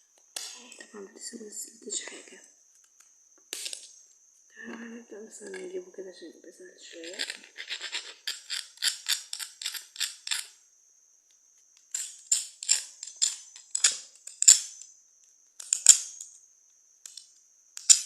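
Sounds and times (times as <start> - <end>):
cuttlebone being scraped: 7.0 - 10.5.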